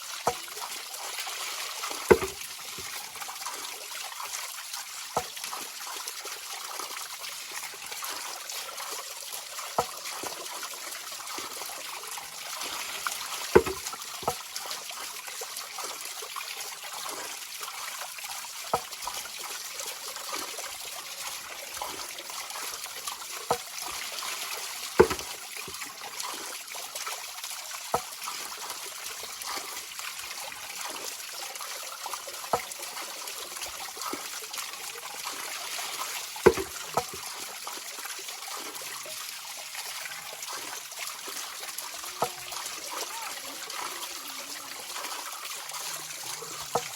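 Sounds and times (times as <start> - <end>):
water splashes: 0.0 - 46.9.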